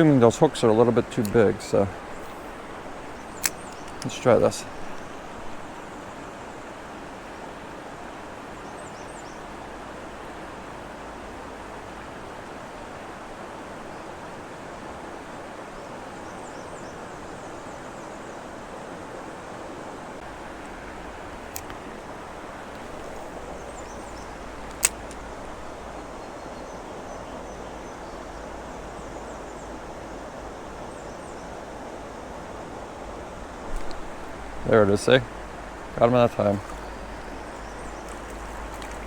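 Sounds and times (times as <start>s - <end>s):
flowing creek water: 0.0s - 39.0s
sharp clicks: 2.1s - 5.1s, 20.3s - 22.1s, 22.7s - 25.8s, 33.7s - 39.0s.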